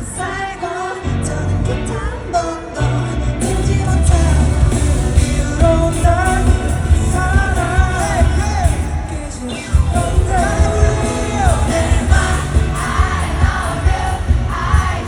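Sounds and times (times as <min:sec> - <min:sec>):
live pop song over loudspeakers: 0:00.0 - 0:15.0
person singing: 0:00.0 - 0:15.0
heavy bass beat: 0:03.5 - 0:09.1, 0:09.8 - 0:15.0.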